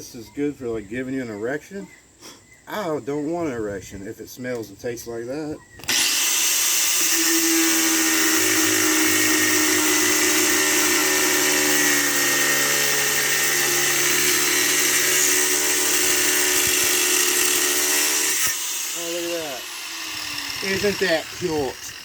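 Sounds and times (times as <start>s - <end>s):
power grinder cutting antler: 5.8s - 22.0s.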